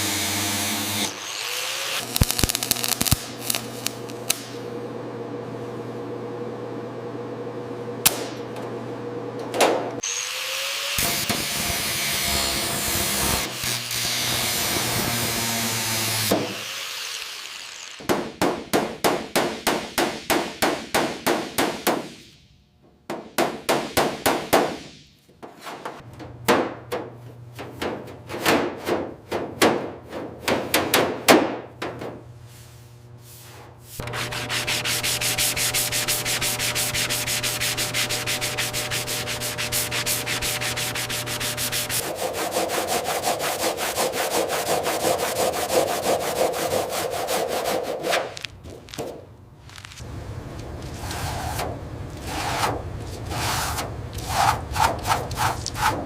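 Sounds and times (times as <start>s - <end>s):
hand sanding car panels: 32.1s - 49.2s, 50.8s - 56.0s.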